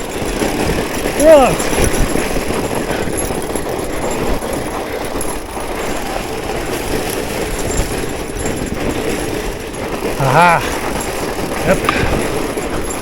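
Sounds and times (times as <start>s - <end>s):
bike tyres crunching on snow: 0.0s - 13.0s.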